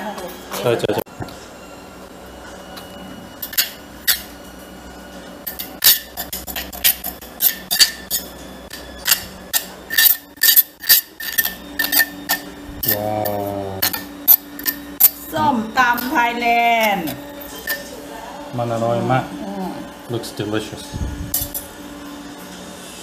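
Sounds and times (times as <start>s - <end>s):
utensil clinking on mortar and plate: 5.5s - 15.2s, 17.0s - 17.9s.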